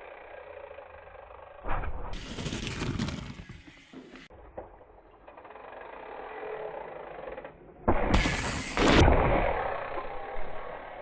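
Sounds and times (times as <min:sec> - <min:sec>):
bike tyres rolling on dirt: 0:00.0 - 0:06.8.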